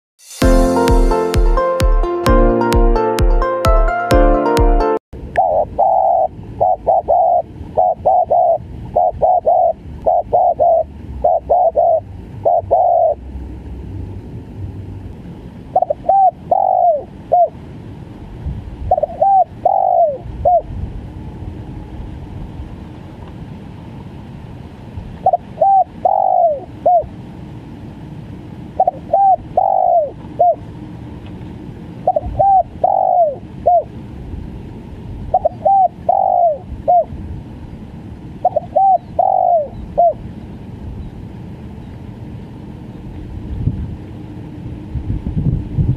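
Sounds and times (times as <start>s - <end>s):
dove cooing: 5.4s - 13.2s, 15.8s - 17.6s, 18.9s - 20.7s, 25.2s - 27.1s, 28.8s - 30.7s, 32.0s - 34.0s, 35.3s - 37.1s, 38.4s - 40.2s.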